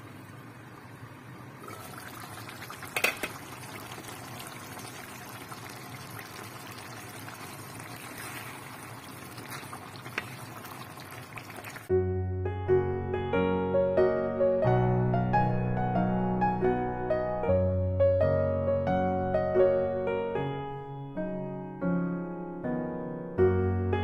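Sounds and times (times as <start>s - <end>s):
food bubbling in a pan: 0.0s - 11.9s.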